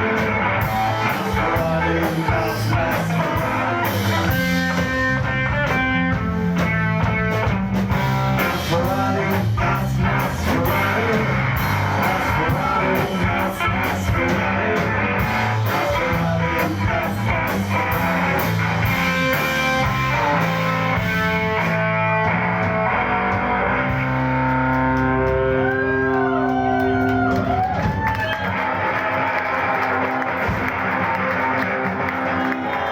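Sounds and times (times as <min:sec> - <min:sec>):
rock band playing live: 0:00.0 - 0:32.9
bent guitar notes: 0:16.8 - 0:27.5.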